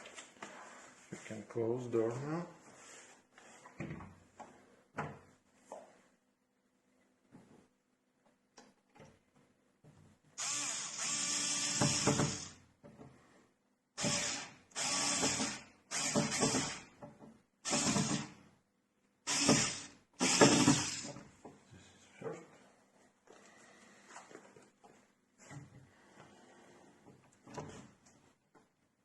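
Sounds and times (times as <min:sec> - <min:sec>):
electric screwdriver running: 0:10.4 - 0:12.5, 0:14.0 - 0:16.8, 0:19.3 - 0:21.1.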